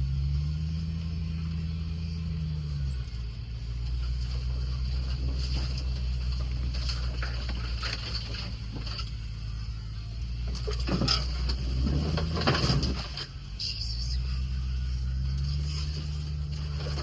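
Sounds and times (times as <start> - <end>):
car engine at low revs: 0.0 - 17.0
light clicks and rattles: 2.8 - 9.4, 10.2 - 13.8.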